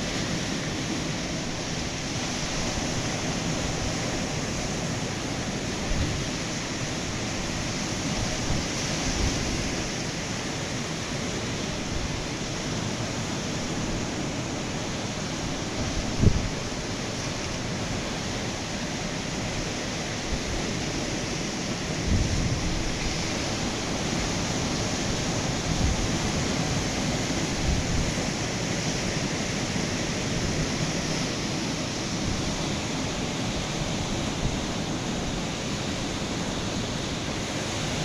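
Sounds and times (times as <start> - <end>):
ocean surf breaking on beach: 0.0 - 38.0
wind rumbling on microphone: 15.5 - 18.4, 19.4 - 38.0.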